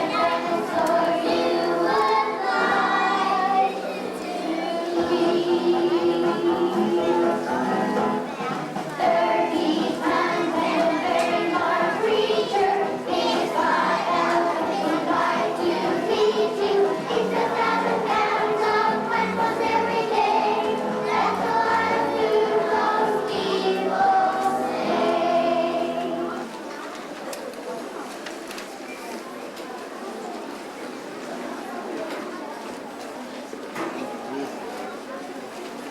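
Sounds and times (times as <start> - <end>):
group of voices singing in chorus: 0.0 - 26.5.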